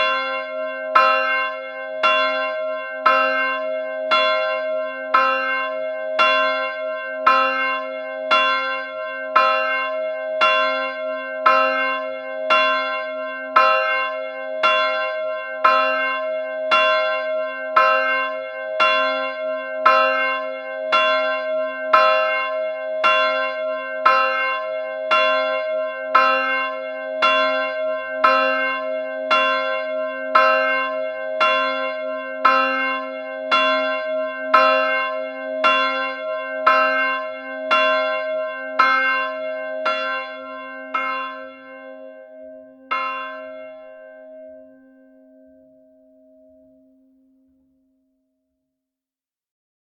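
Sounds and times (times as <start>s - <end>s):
bell struck repeatedly: 27.2s - 47.5s.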